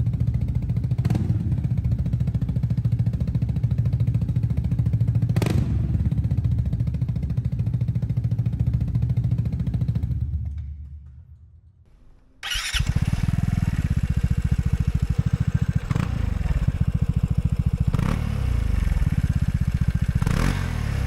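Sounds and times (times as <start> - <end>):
scooter engine idling: 12.4 - 21.0.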